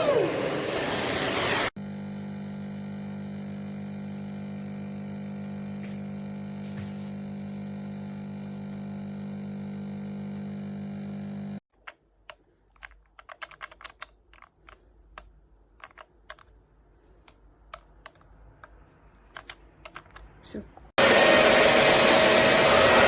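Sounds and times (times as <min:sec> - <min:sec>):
electric buzzing hum: 0:01.7 - 0:11.6.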